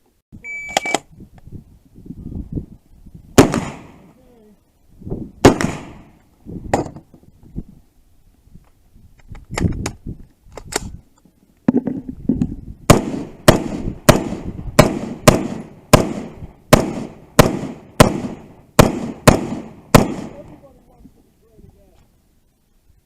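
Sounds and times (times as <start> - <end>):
gunshots with echo: 3.4 - 4.0, 5.4 - 6.1, 12.9 - 20.4.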